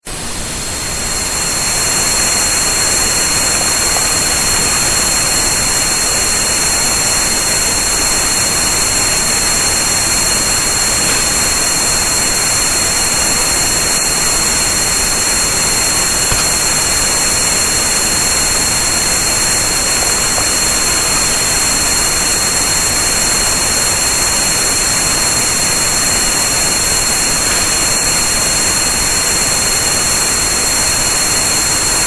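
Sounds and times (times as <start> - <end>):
white noise hiss: 0.1 - 32.0.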